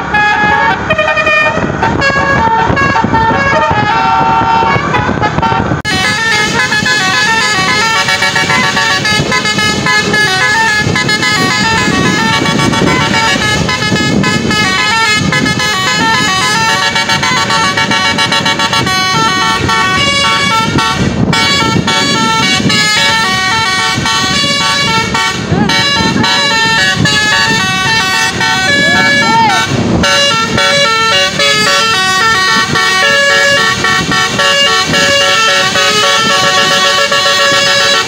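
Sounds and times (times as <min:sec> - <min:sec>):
bus horn playing a melody: 0:00.0 - 0:38.0
road noise: 0:00.0 - 0:38.0
voices: 0:21.6 - 0:35.0.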